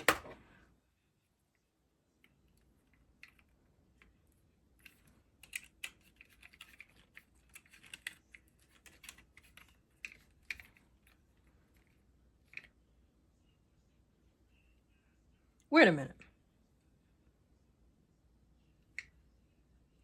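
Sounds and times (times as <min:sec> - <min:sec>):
small plastic parts clicking: 0:02.2 - 0:12.8.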